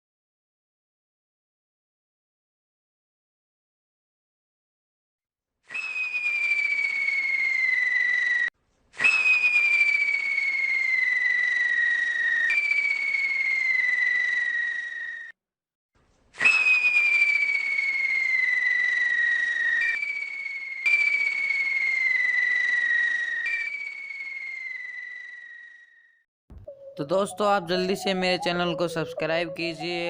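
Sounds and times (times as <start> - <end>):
spinner shrill whistle over hiss: 5.7 - 15.4, 16.4 - 26.2.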